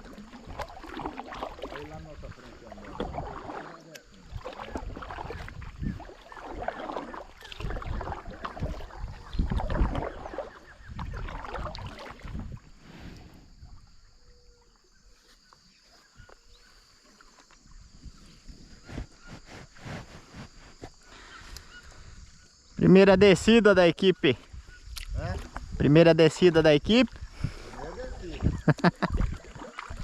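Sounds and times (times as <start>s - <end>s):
paddle splashing in water: 0.0s - 14.0s, 27.1s - 30.0s
wind buffeting microphone: 4.2s - 6.7s, 7.5s - 14.1s, 24.4s - 25.9s, 26.6s - 30.0s.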